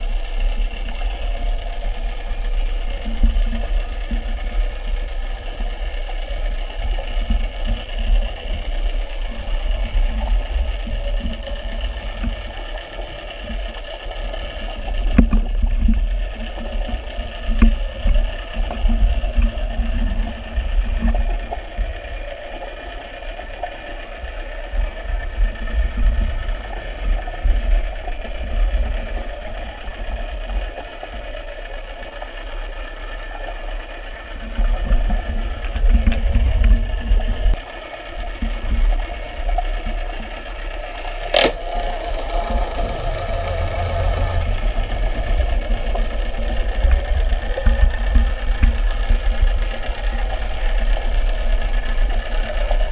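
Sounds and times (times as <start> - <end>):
small motor whining: 0.0 - 52.9.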